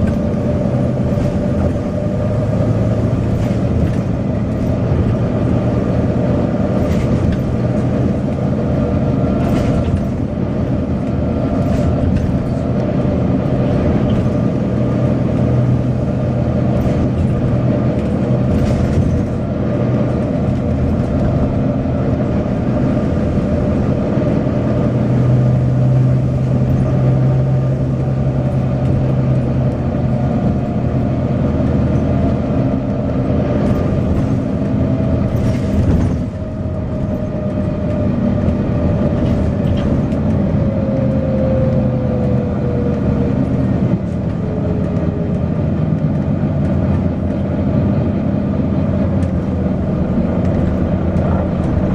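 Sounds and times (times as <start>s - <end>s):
bus diesel engine droning: 0.0s - 51.9s.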